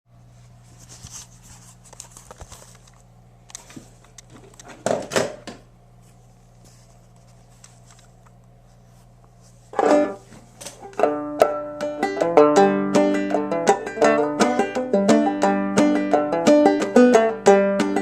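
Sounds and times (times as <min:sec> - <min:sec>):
banjo picking: 0:09.7 - 0:18.0.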